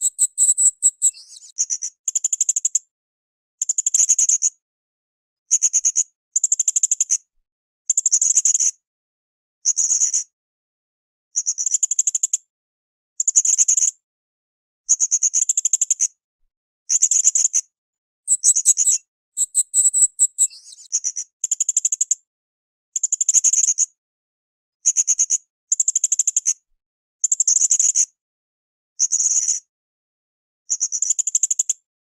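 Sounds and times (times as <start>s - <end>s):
parrot chattering: 18.3s - 20.5s
parrot twittering: 18.3s - 20.6s.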